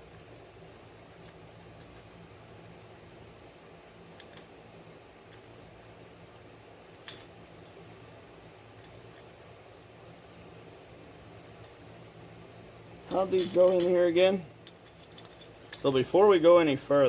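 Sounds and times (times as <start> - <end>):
faint low hum: 0.0 - 17.0
small metal parts clinking: 7.0 - 7.8, 13.1 - 16.0.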